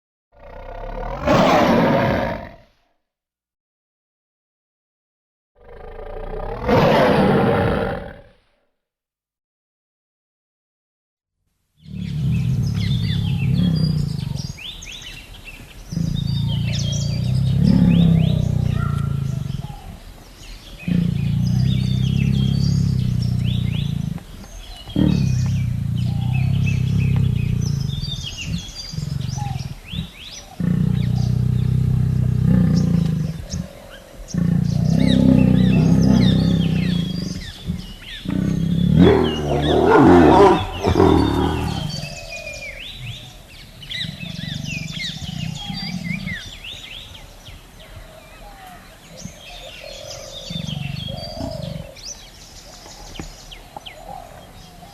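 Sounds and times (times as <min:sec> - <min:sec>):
birds chirping: 0:00.4 - 0:02.6, 0:05.7 - 0:08.3, 0:11.8 - 0:54.9
tiger calling: 0:00.4 - 0:02.6, 0:05.6 - 0:08.3, 0:11.8 - 0:47.2.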